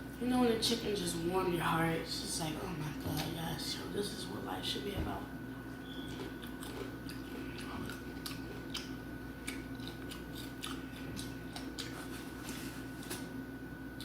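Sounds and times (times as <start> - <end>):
low background hum: 0.0 - 14.0
person chewing crunchy food: 5.7 - 14.0.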